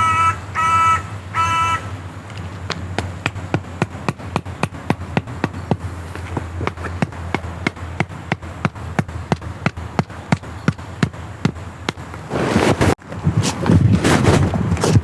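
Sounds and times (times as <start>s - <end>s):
sharp knocks: 2.7s - 12.2s.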